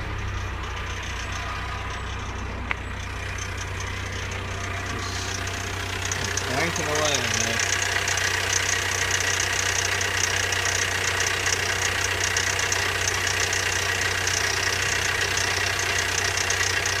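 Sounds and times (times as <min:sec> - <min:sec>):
engine idling: 0:00.0 - 0:17.0
metallic ticking rattle: 0:00.0 - 0:17.0.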